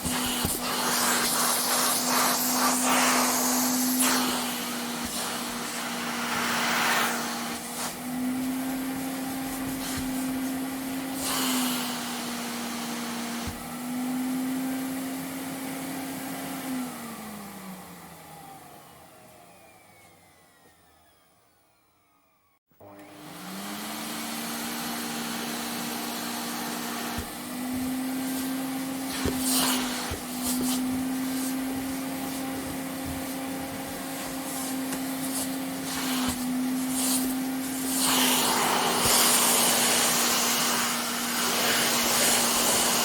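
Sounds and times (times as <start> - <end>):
vacuum cleaner running: 0.0 - 43.0
vacuum motor winding down: 16.7 - 43.0.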